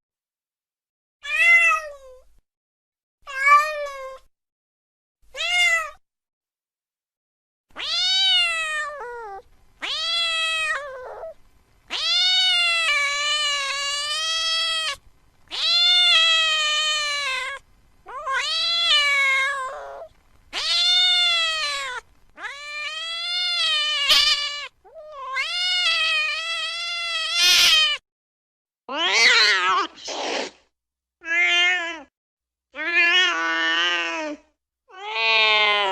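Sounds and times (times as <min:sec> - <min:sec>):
cat meowing: 0:01.2 - 0:02.2, 0:05.3 - 0:06.0, 0:07.7 - 0:28.0, 0:28.9 - 0:30.0, 0:31.2 - 0:32.1, 0:32.8 - 0:35.9.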